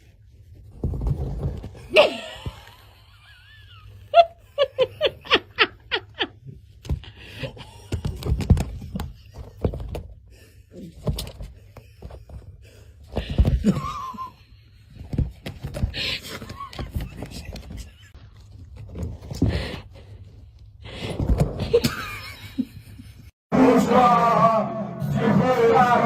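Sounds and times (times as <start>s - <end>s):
person laughing: 1.9s - 7.9s, 13.5s - 14.6s.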